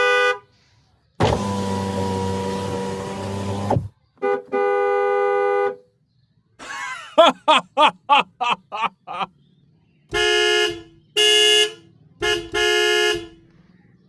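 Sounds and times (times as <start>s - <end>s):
toy vehicle electronic horn: 0.0s - 0.5s, 4.2s - 5.8s, 10.1s - 13.4s.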